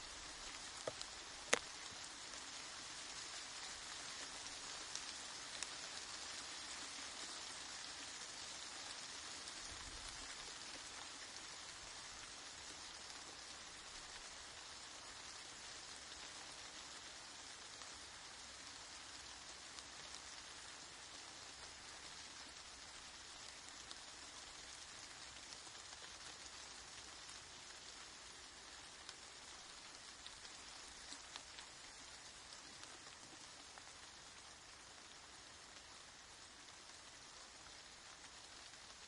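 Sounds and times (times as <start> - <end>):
soft rain falling: 0.0 - 39.0.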